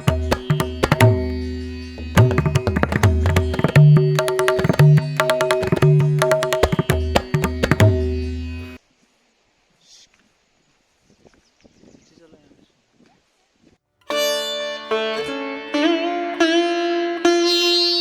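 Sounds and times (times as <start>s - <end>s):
drum strikes: 0.0s - 8.6s
held music notes: 0.0s - 8.8s.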